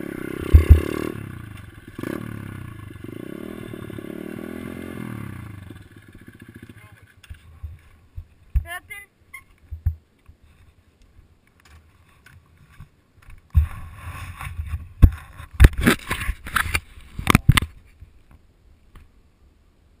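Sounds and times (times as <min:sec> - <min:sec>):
handling noise rustling and scraping: 0:09.4 - 0:18.4.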